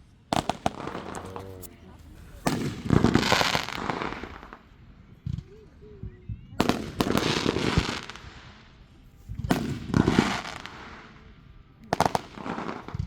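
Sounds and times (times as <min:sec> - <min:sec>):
fireworks bangs and pops: 0:00.3 - 0:05.5, 0:06.6 - 0:08.6, 0:09.3 - 0:11.2, 0:11.9 - 0:13.0.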